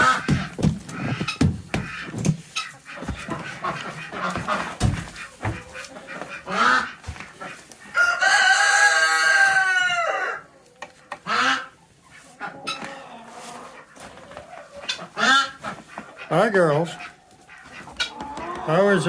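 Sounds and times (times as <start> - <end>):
dull thumps: 0.0 - 5.8
rooster crowing: 8.0 - 10.5.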